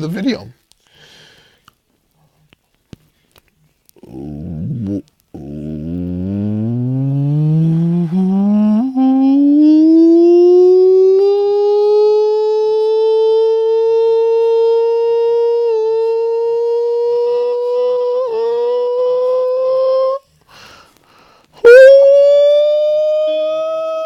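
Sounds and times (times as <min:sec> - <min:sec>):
short breath: 0:00.8 - 0:01.7, 0:20.4 - 0:21.6.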